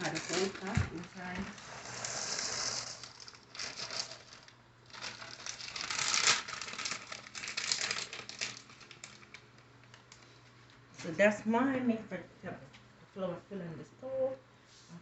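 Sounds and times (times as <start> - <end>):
bag crinkling: 0.0 - 10.4.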